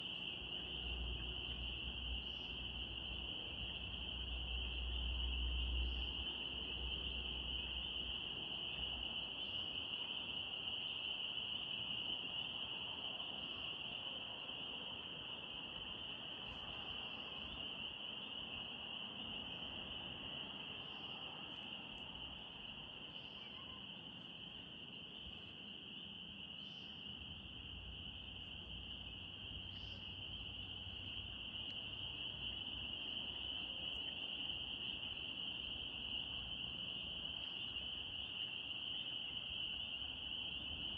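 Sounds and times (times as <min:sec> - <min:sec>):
chorus of frogs calling: 0:00.0 - 0:40.9.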